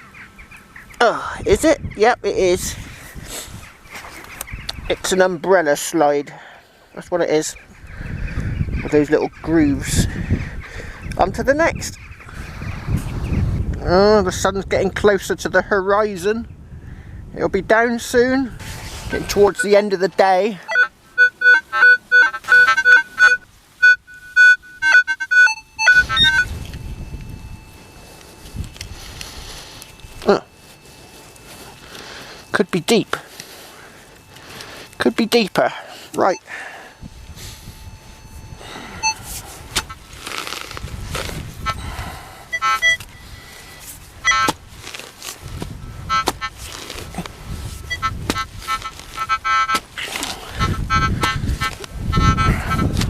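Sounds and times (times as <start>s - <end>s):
two-note detector tone: 18.6s - 35.6s, 36.2s - 40.4s, 42.5s - 44.6s, 47.8s - 49.8s
metal detector beeps: 18.6s - 40.7s, 42.5s - 44.6s, 45.8s - 46.5s, 47.8s - 49.8s
digging scrapes and knocks: 43.8s - 50.5s.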